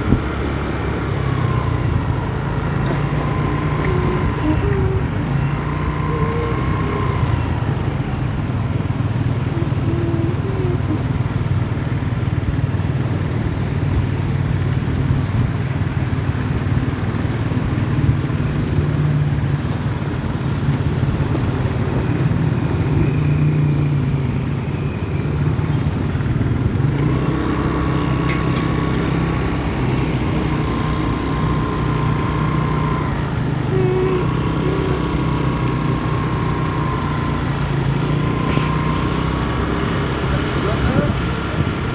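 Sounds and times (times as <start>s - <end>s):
bus engine droning: 0.0s - 41.9s
faint horn-like tones: 2.8s - 7.4s.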